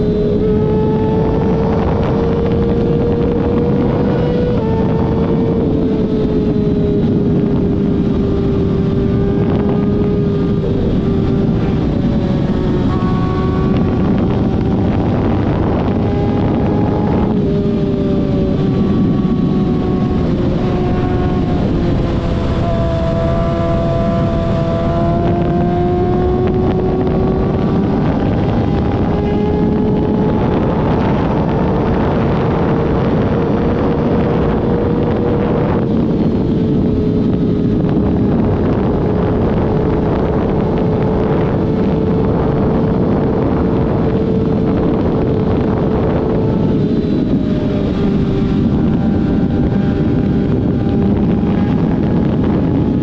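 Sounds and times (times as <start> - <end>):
vehicle engine running: 0.0 - 53.0
wind rushing over microphone: 0.0 - 53.0.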